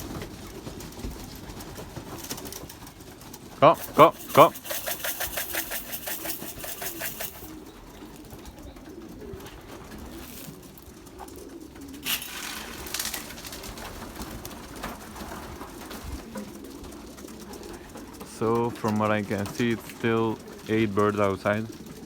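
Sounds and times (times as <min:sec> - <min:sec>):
pigeon wings flapping: 0:00.0 - 0:22.0
pigeons cooing: 0:00.0 - 0:22.0
short rustle: 0:12.0 - 0:13.9.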